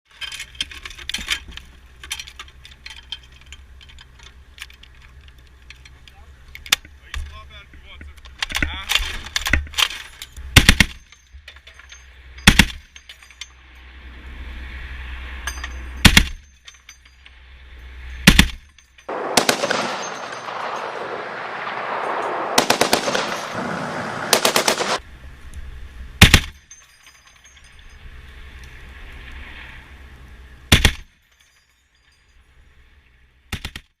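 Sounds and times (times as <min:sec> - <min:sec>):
anti-aircraft gun firing: 0:18.3 - 0:25.0
dense noise: 0:19.1 - 0:25.0.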